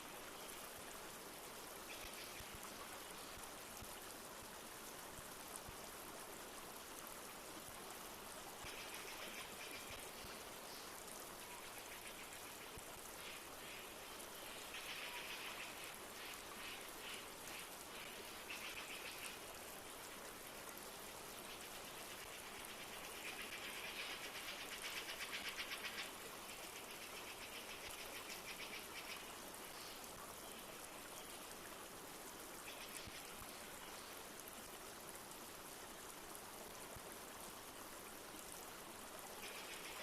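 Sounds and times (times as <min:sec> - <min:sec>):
stream water rushing: 0:00.0 - 0:40.0.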